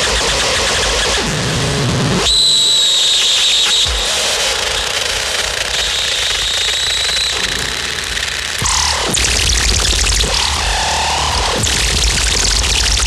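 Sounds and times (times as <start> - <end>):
high whistle-like tone: 2.2 - 3.8, 5.8 - 7.5.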